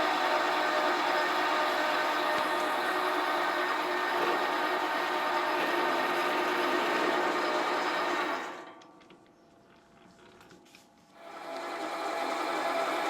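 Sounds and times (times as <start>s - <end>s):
lathe whining while cutting: 0.0s - 8.6s, 11.3s - 13.0s.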